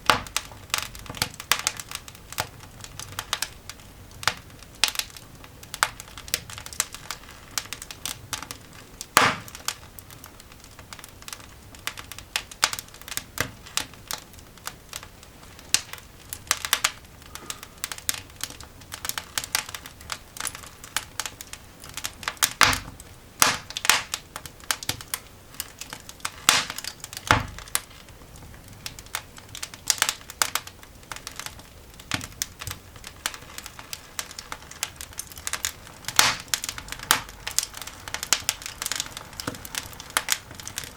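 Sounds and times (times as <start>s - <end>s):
coal fire crackling and popping: 0.0s - 40.9s.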